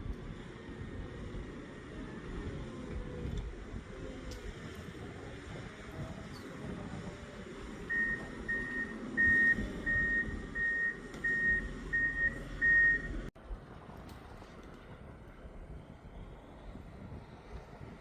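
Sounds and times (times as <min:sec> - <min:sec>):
reversing alarm beeping: 0:07.9 - 0:13.3.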